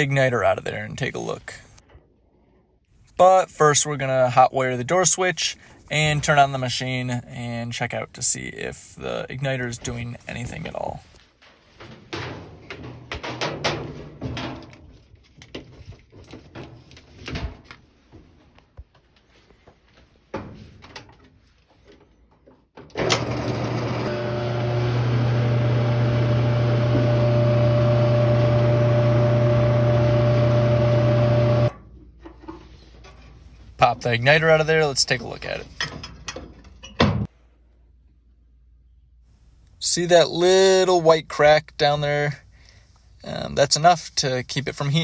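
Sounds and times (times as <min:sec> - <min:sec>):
dryer drum motor humming: 0:23.0 - 0:31.8.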